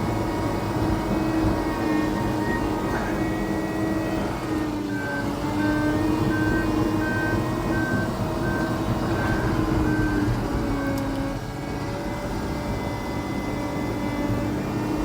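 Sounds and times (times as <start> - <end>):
diesel engine running: 0.0 - 15.0
backup alarm beeping: 4.9 - 10.5.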